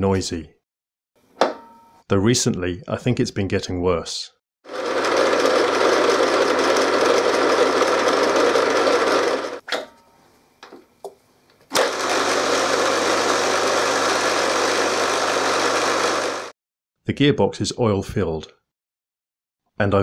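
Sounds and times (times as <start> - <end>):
milling machine gear noise: 4.7 - 9.6.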